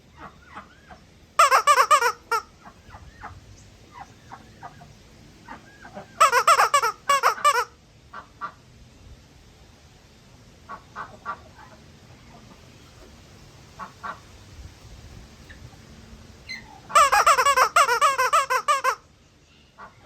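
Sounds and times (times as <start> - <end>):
parrot calling: 0.2 - 7.8, 16.4 - 19.1
rapid wavering parrot squawks: 0.4 - 4.8, 5.5 - 7.7, 16.5 - 19.0.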